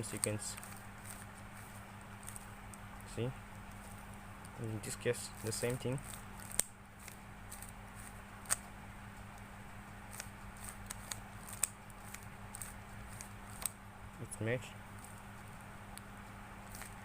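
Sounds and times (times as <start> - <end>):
faint steady hum: 0.0 - 17.0
puzzle cube clicking: 10.1 - 13.8.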